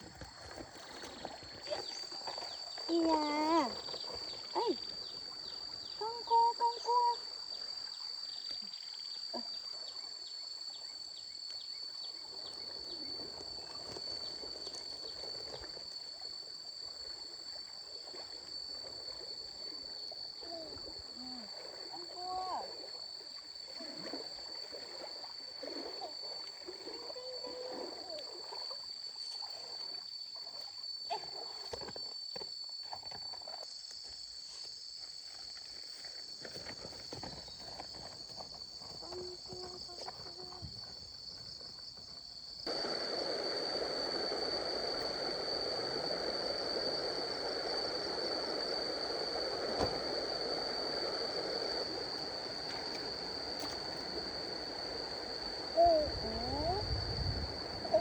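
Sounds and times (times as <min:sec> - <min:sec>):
stream water running: 0:00.0 - 0:58.0
high-pitched whine: 0:42.7 - 0:58.0.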